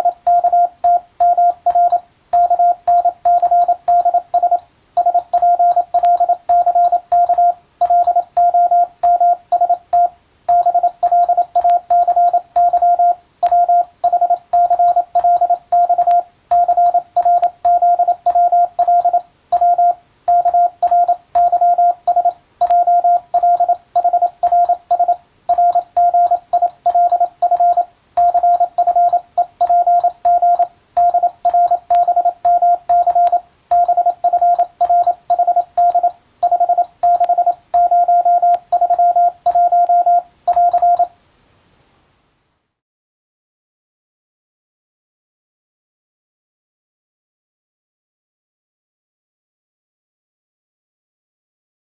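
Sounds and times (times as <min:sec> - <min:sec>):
morse code tone: 0:00.0 - 0:41.1.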